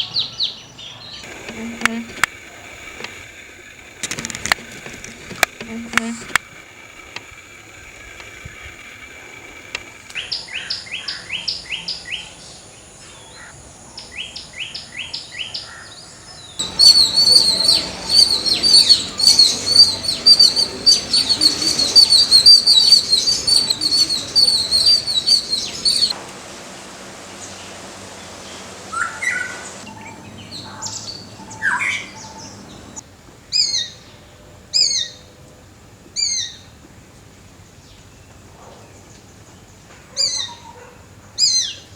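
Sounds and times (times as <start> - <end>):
birds calling: 0.0 - 34.0.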